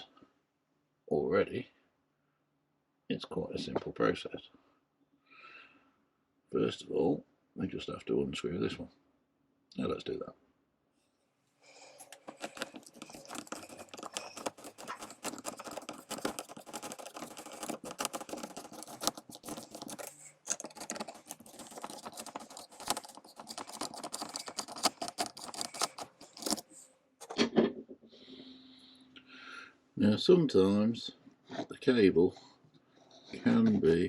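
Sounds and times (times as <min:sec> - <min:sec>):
screwdriver clicking and scraping: 0:12.0 - 0:26.9.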